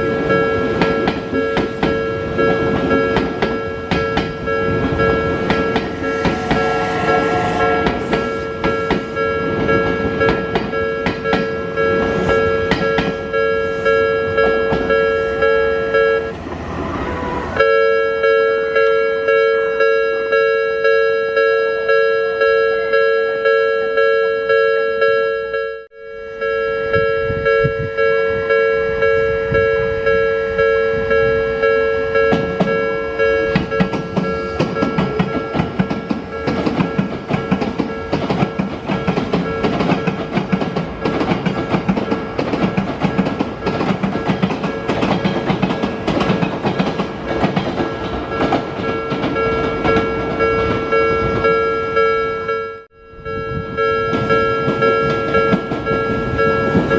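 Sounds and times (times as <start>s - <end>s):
level-crossing warning bell: 0.0s - 16.3s, 17.2s - 56.9s
train wheels clacking on rails: 0.3s - 15.1s, 32.2s - 51.6s, 54.0s - 56.9s.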